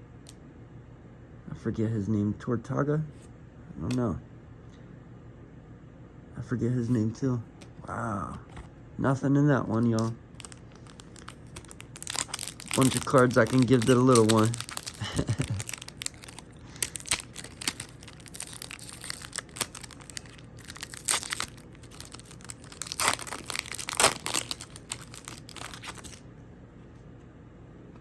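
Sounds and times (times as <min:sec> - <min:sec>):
foil wrapper crinkling and tearing: 0:09.7 - 0:26.2.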